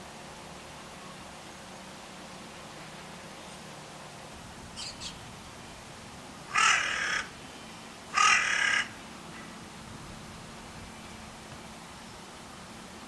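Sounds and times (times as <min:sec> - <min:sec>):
crow cawing: 0:06.5 - 0:07.4, 0:08.1 - 0:09.5.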